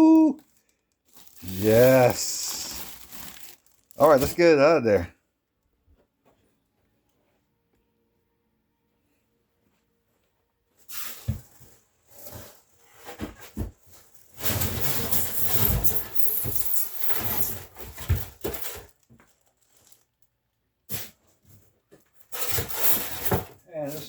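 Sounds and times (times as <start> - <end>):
cardboard packaging rustling: 0.4 - 4.8.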